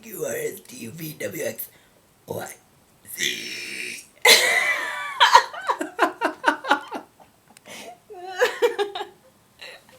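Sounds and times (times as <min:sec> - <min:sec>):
person laughing: 0:04.3 - 0:07.2, 0:08.2 - 0:09.2.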